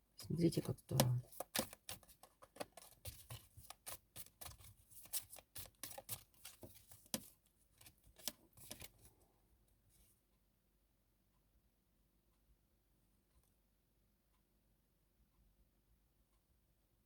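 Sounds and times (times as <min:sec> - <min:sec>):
cards shuffling: 0:00.9 - 0:08.9.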